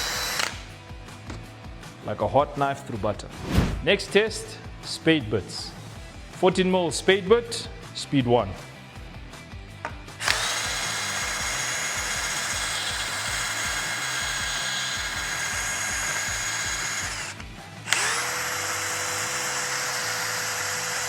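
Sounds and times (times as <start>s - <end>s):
drill whining into wood: 0.0s - 0.8s, 10.2s - 21.0s.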